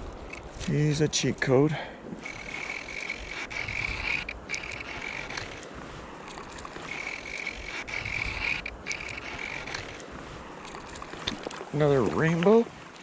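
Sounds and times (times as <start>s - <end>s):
fishing reel drag buzzing: 0.0s - 0.7s, 2.2s - 11.4s
river water rumble: 0.0s - 13.0s
wind: 0.0s - 13.0s.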